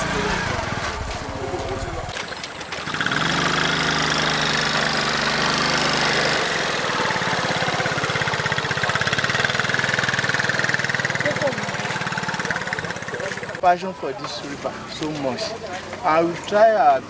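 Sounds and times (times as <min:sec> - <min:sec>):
engine running: 0:00.0 - 0:13.6.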